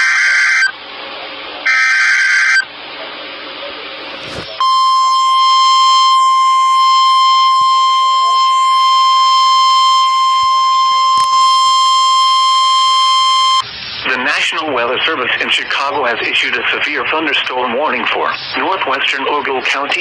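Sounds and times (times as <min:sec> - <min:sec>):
steady warning alarm tone: 0:00.0 - 0:00.8, 0:01.6 - 0:02.7, 0:04.6 - 0:13.6
radio static: 0:00.0 - 0:20.0.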